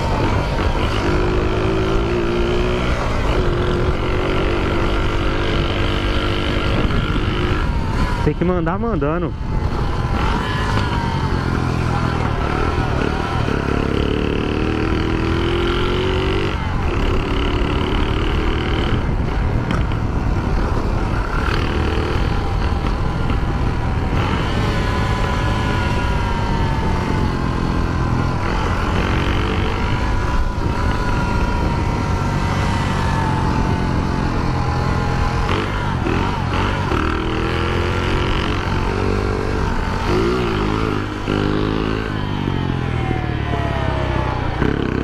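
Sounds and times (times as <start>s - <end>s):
moped engine revving: 0.0s - 45.0s.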